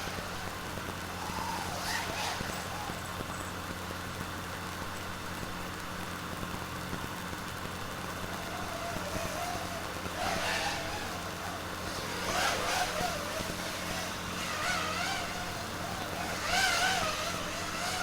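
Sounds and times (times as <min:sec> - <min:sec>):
drone motors whirring: 0:00.0 - 0:04.2, 0:07.8 - 0:18.0.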